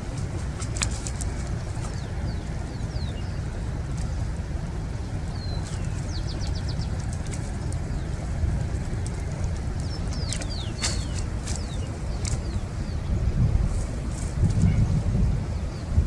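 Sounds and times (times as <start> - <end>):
steady low rumble: 0.0 - 16.0
small birds chirping and whistling: 1.9 - 3.4, 5.3 - 8.2, 9.8 - 13.0.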